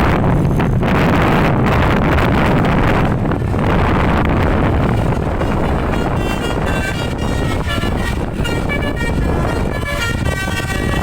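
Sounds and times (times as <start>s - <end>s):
engine rumble: 0.0s - 11.0s
wind rumble: 0.0s - 11.0s
multi-trumpet air horn melody: 2.3s - 11.0s.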